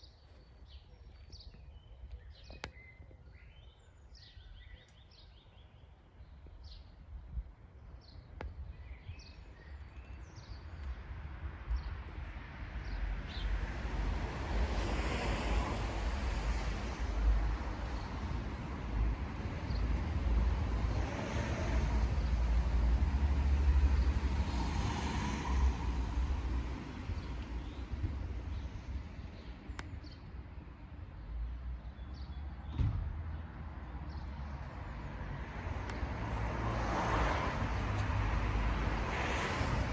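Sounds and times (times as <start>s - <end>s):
birds chirping: 16.5s - 23.0s.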